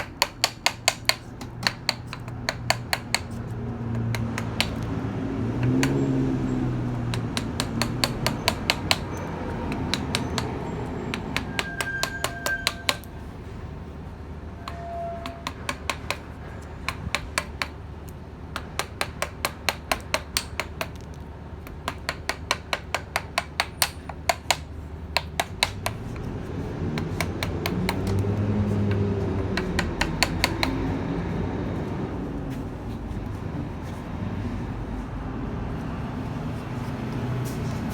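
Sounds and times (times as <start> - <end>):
mallet tapping chisel into wood: 0.0 - 4.9, 5.6 - 6.1, 6.9 - 13.1, 14.7 - 17.8, 18.6 - 21.1, 21.7 - 26.3, 27.0 - 30.9
low engine rumble: 24.8 - 37.9.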